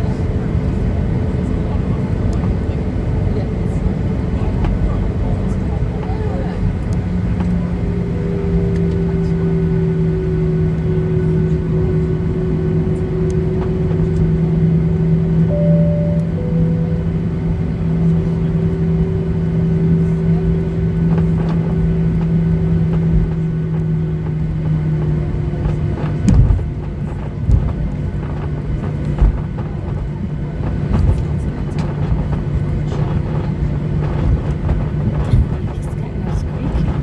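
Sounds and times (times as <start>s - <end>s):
low rumble: 15.5s - 18.6s.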